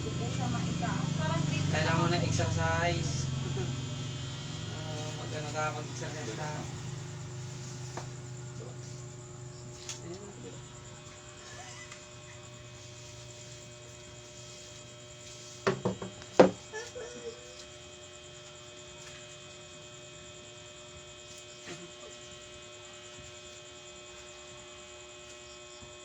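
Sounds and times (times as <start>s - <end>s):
electrical mains hum: 0.0s - 26.0s.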